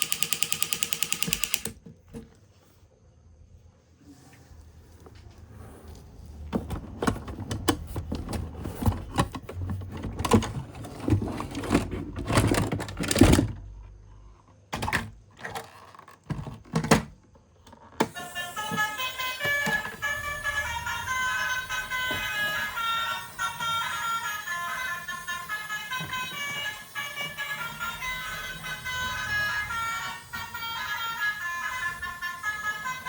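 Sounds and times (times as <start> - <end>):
plastic toy vehicles clattering: 7.0 - 13.6, 14.8 - 18.0
music: 18.0 - 33.0.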